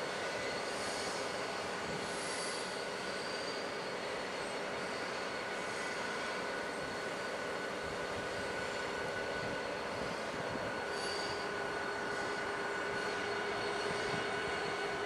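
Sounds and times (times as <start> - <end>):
steel wheels rumbling on rail: 0.0 - 15.0
high-pitched wheel squeal: 2.0 - 5.2, 10.1 - 15.0.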